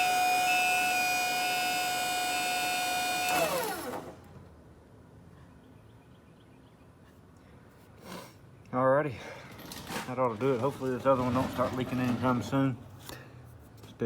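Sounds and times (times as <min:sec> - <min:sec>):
hydraulic pump whine: 0:00.0 - 0:04.4.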